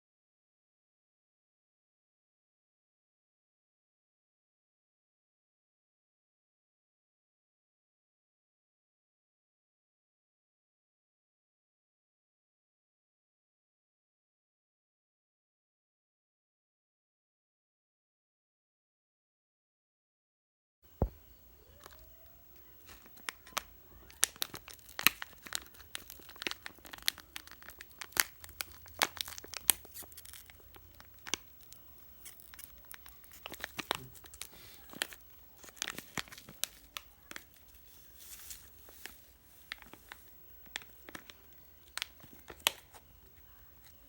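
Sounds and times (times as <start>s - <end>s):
crinkling: 20.9s - 44.0s
faint low hum: 20.9s - 44.0s.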